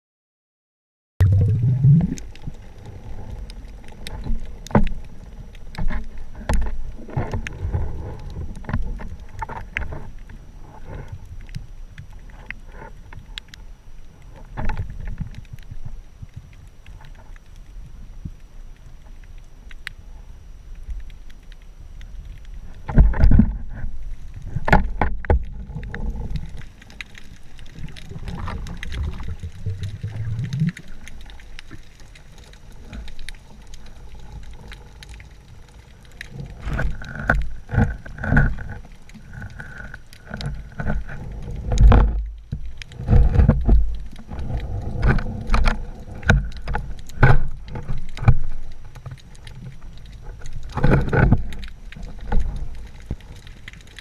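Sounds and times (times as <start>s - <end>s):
muffled water sloshing: 1.2s - 13.4s.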